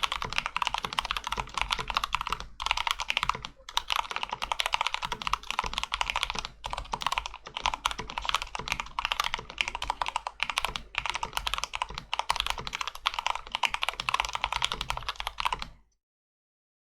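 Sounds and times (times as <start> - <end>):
mechanical keyboard typing: 0.0 - 15.8.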